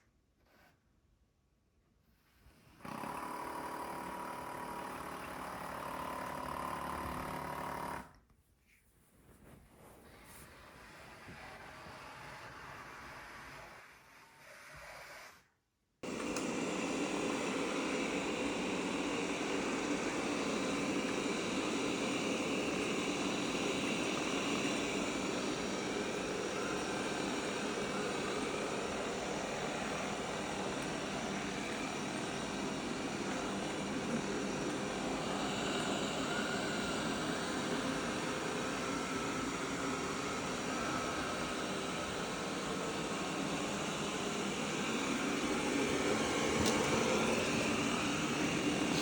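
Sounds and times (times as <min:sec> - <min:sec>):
robot vacuum whirring: 0:16.0 - 0:49.0.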